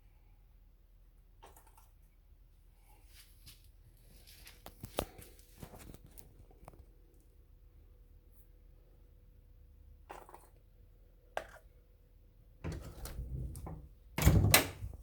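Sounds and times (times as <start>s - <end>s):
clicking and squelchy rustling in wall: 12.6s - 15.0s.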